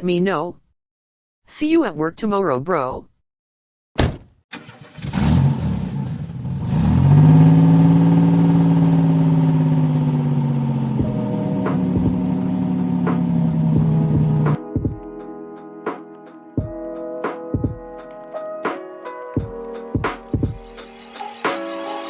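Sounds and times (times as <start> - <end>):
car engine starting and revving: 4.5 - 14.6.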